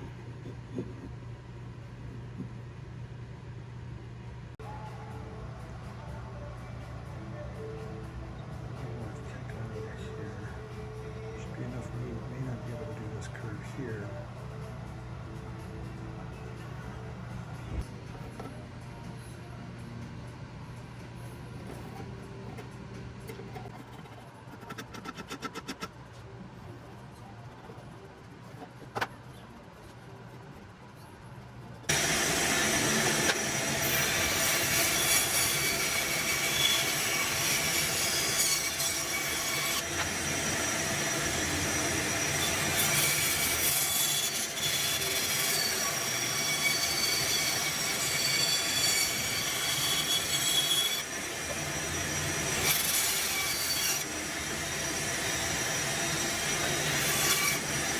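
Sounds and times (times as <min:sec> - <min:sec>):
hatchet grinding with squeals: 0:42.4 - 0:54.1.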